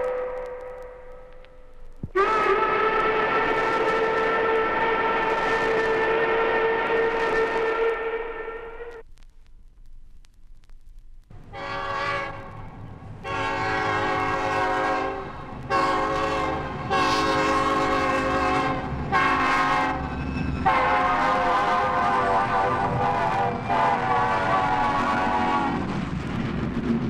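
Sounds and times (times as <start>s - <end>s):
loud horn blasts: 0.0s - 1.3s, 2.2s - 9.0s, 11.6s - 12.6s, 13.2s - 20.0s, 20.6s - 25.9s
steady low rumble: 0.0s - 2.2s, 8.5s - 17.0s, 21.4s - 27.0s.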